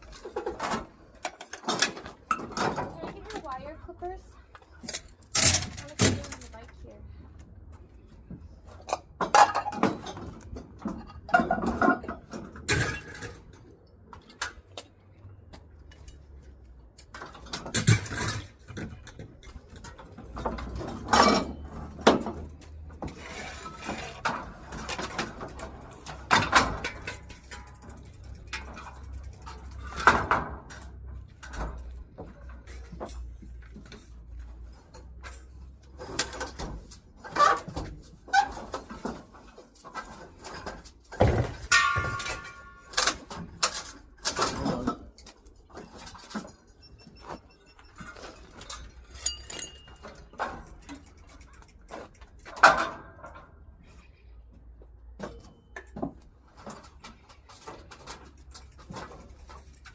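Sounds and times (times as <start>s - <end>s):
hard objects knocking and clattering: 38.6s - 46.7s.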